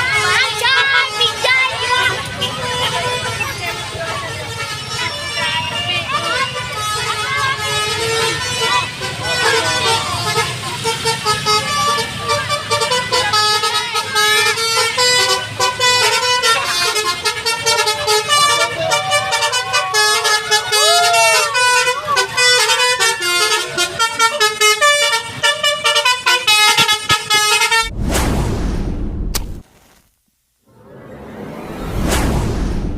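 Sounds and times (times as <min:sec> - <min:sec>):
people shouting: 0:00.0 - 0:10.8, 0:16.4 - 0:24.6
multi-tone musical bus horn: 0:00.0 - 0:27.9
loud whoosh: 0:27.8 - 0:29.6, 0:30.7 - 0:32.9.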